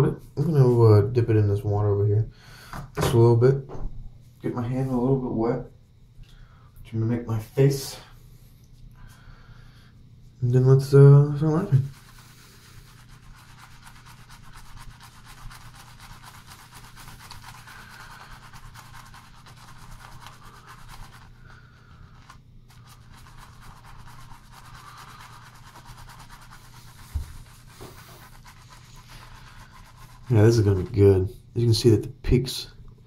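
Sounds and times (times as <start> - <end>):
shaving brush scratching on face: 10.8 - 31.3.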